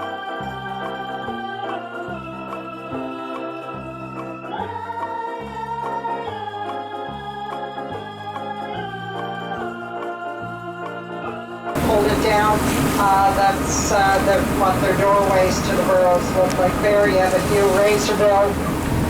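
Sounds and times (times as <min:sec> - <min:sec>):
organ-like chords: 0:11.8 - 0:19.0.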